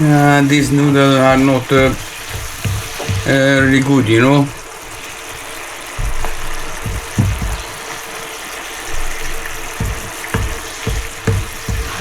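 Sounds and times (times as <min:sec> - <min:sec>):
mushrooms sizzling in a pan: 0:00.0 - 0:12.0
low thumps: 0:06.0 - 0:07.9, 0:09.8 - 0:12.0.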